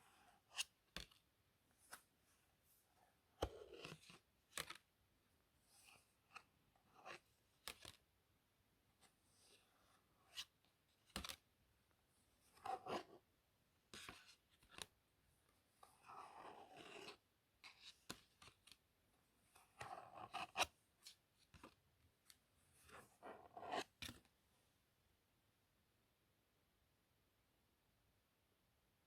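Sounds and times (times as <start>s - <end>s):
playing cards rustling: 7.0s - 8.0s.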